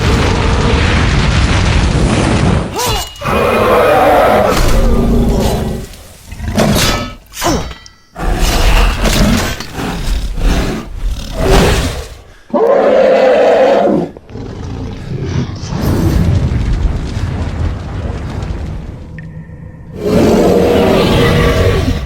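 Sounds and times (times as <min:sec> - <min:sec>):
dragon roars and growls: 0:19.9 - 0:22.0.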